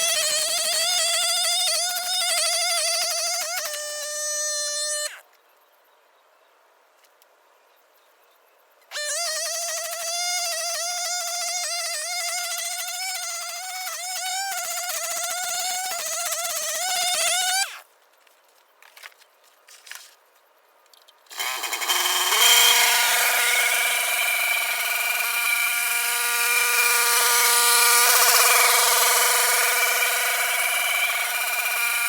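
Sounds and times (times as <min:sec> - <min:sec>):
small petrol engine running: 0:21.3 - 0:32.0.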